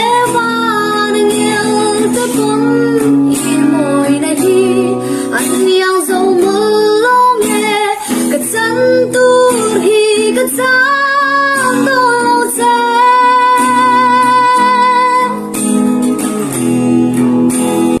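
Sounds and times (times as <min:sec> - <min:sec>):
woman singing: 0:00.0 - 0:15.8
plucked guitar: 0:00.0 - 0:18.0.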